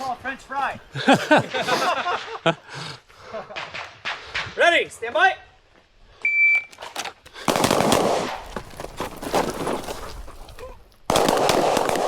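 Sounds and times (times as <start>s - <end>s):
rapid handgun fire: 7.4s - 8.5s, 11.1s - 12.0s.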